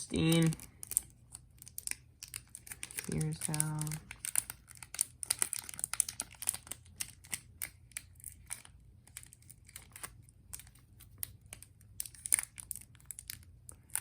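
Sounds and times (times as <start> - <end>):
plastic bag crinkling: 0.0 - 14.0.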